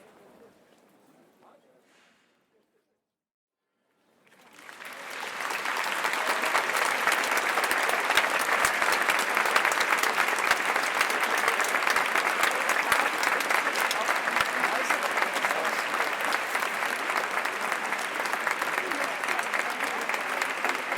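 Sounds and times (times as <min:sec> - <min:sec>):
large crowd applauding: 0:04.2 - 0:20.9.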